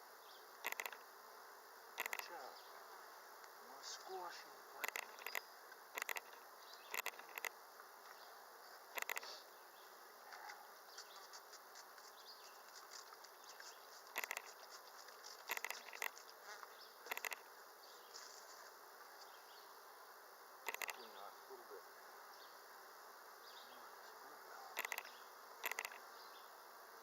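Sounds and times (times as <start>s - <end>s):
bees buzzing: 0.0s - 27.0s
sharp clicks: 0.6s - 1.0s, 2.0s - 2.3s, 4.8s - 7.6s, 8.9s - 9.3s, 12.9s - 16.3s, 17.1s - 17.5s, 20.7s - 21.1s, 24.8s - 26.0s.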